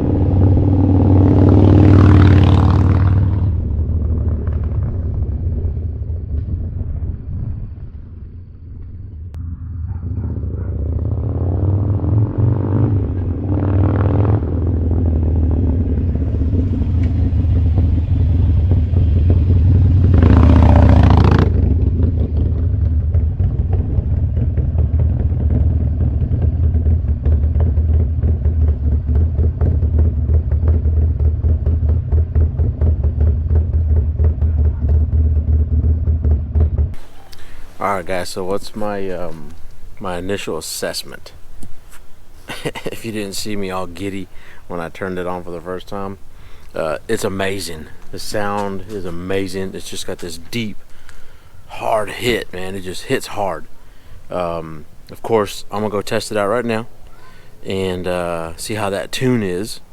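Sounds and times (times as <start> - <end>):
motorcycle engine idling and revving: 0.0 - 59.9.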